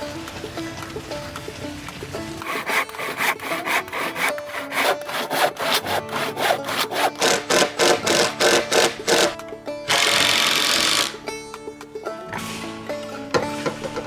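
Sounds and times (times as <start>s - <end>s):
background music: 0.0s - 14.0s
hand saw cutting wood: 2.4s - 11.2s.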